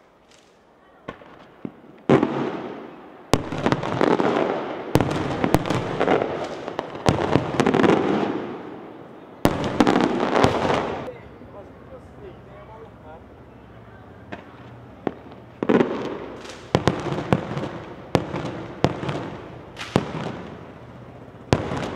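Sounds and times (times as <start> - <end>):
fireworks shells bursting: 0.0 - 2.8, 3.4 - 8.6, 14.2 - 21.9
rushing noise after bangs: 14.3 - 20.7.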